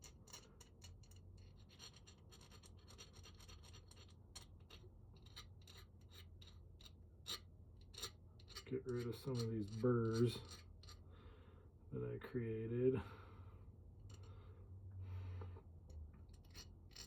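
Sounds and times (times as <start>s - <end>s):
hand file rasping on metal: 7.2s - 11.0s.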